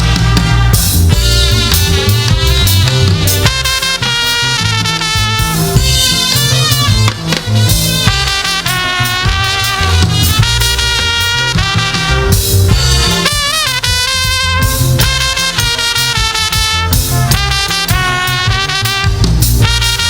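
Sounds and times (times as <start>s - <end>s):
drum and bass beat: 0.0s - 20.0s
live gospel band music: 0.0s - 20.0s
gliding melodic lead: 0.7s - 13.9s.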